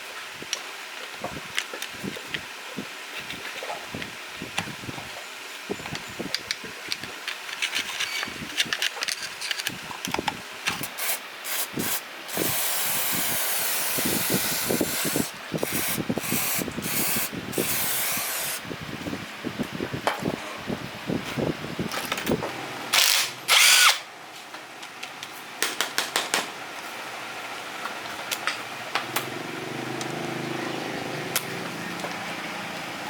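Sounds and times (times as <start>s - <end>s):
spray hissing: 10.9s - 18.6s.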